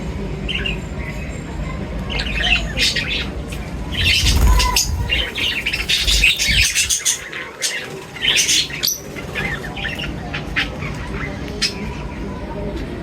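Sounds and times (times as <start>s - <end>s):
birds chirping and squawking: 3.9s - 10.0s
low thumps: 4.0s - 7.1s.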